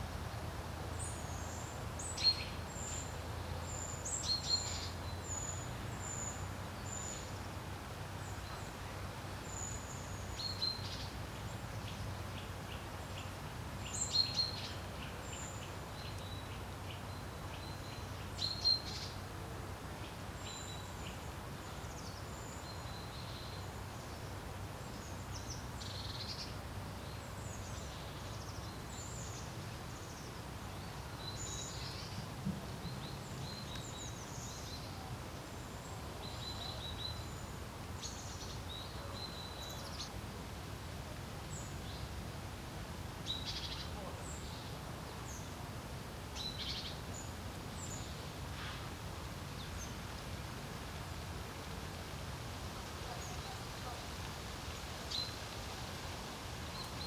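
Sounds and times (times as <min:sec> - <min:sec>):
songbirds chirping: 0:00.0 - 0:57.0.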